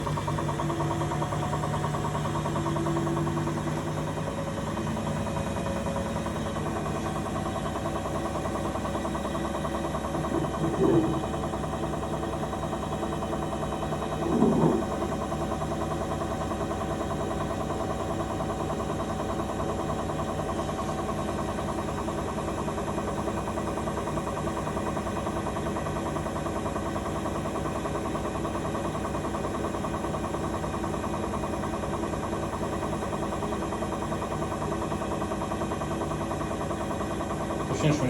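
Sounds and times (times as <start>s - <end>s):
washing machine drum knocking: 10.0s - 11.5s, 14.0s - 15.2s.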